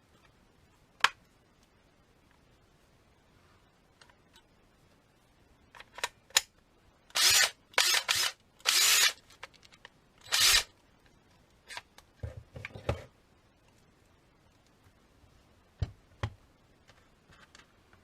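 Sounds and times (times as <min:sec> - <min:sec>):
impact driver bursts: 0:07.2 - 0:09.2.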